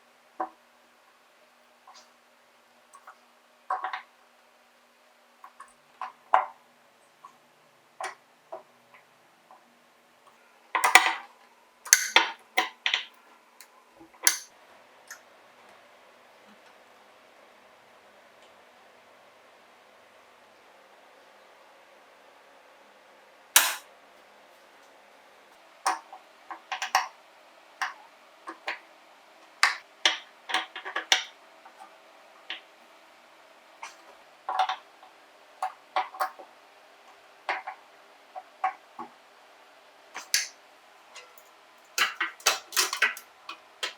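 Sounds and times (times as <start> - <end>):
hard objects clicking and knocking: 10.8 - 11.3, 11.9 - 13.2, 14.2 - 14.5, 23.6 - 23.8, 25.9 - 27.2, 27.8 - 28.8, 29.6 - 31.8, 33.8 - 35.0, 35.6 - 36.5, 37.5 - 37.8, 40.2 - 40.5, 41.2 - 43.9
objects clattering: 41.1 - 43.9.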